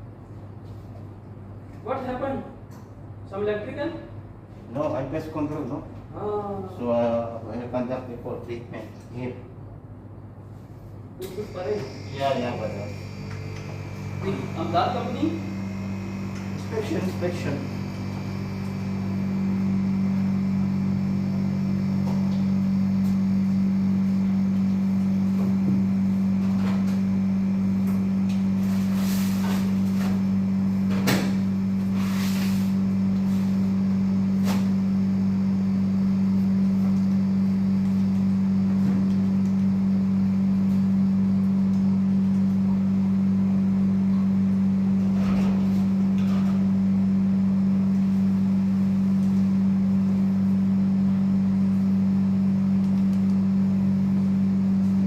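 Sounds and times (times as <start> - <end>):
machine humming: 11.2 - 28.4.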